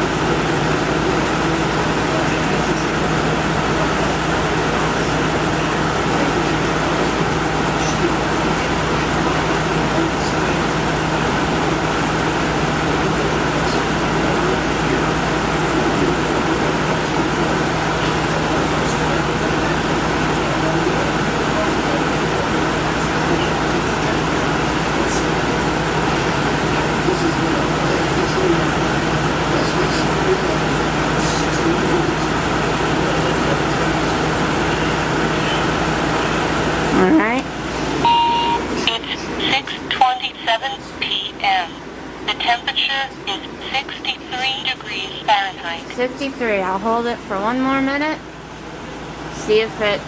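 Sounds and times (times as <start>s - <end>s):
air conditioner fan rushing air: 0.0s - 50.0s
compressor low hum: 0.0s - 50.0s.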